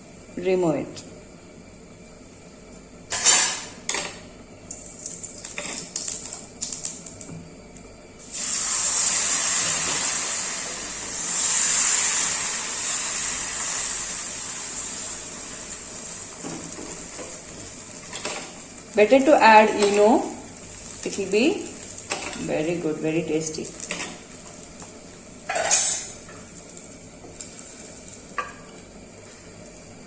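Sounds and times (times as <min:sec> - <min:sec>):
hot pan sizzling: 0:04.7 - 0:07.3, 0:08.2 - 0:28.8.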